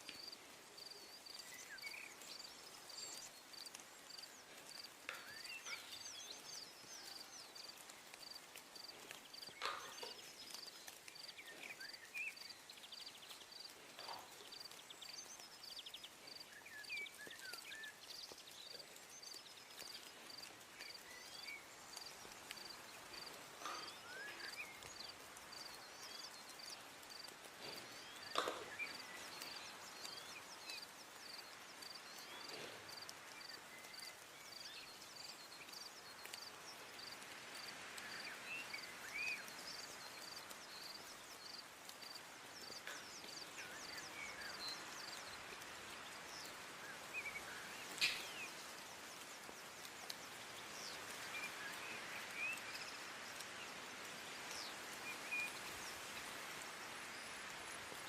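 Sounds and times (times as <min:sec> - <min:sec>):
bird-like chirps: 0:00.0 - 0:58.0.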